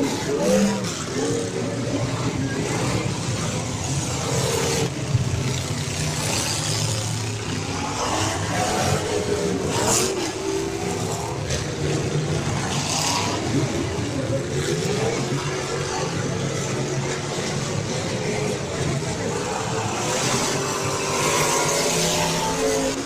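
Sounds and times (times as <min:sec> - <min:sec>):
race car engines revving: 0:00.0 - 0:23.0.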